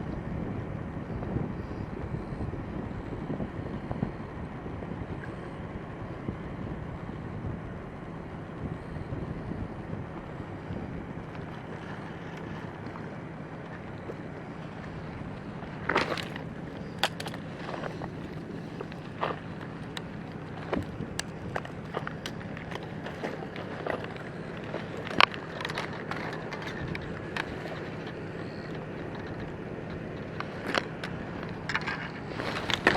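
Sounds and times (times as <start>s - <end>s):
faint hum: 0.0s - 32.9s
sharp clicks and knocks: 11.3s - 32.9s.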